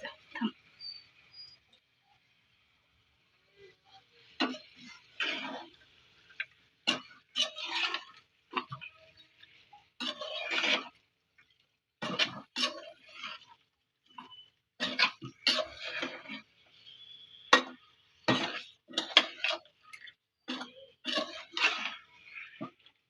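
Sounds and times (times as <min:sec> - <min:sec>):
metal spoon scraping cooking pan: 0:03.5 - 0:23.0.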